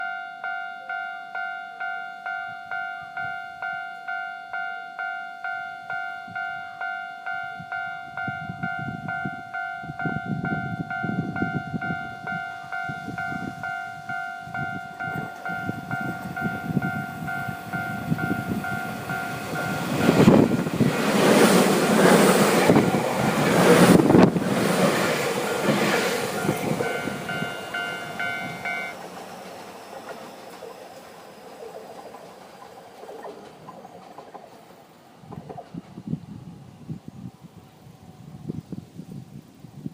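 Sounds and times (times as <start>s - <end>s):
level-crossing alarm dinging: 0.0s - 29.5s
train rumbling past: 5.6s - 39.9s.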